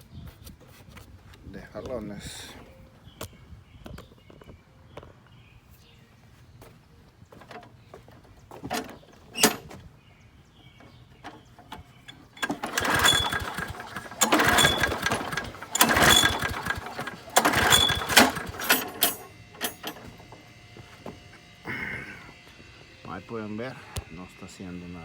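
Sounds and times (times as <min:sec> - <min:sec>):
lawnmower recoil starter cord whirring: 0:07.4 - 0:09.9, 0:10.8 - 0:24.7.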